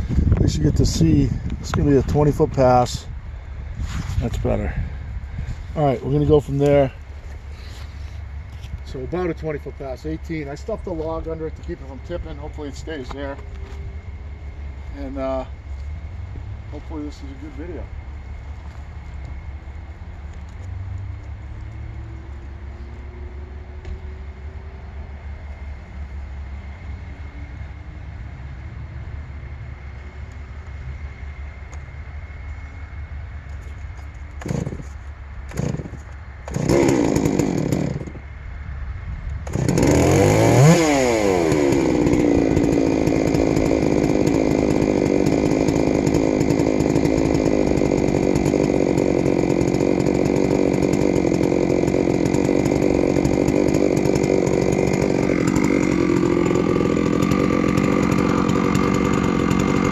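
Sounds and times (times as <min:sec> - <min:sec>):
low steady rumble: 0:00.0 - 0:40.5
chainsaw cutting log: 0:00.8 - 0:03.0, 0:06.1 - 0:13.8, 0:34.2 - 0:38.2, 0:39.4 - 0:59.9.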